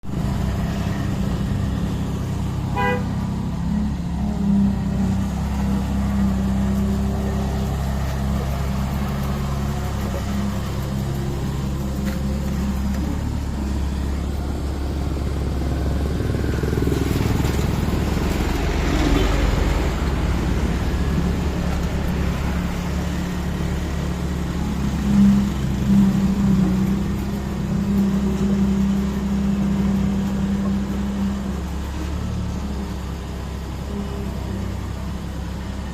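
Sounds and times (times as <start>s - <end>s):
road roller diesel engine droning: 0.0s - 35.9s
short horn toot: 2.7s - 3.1s.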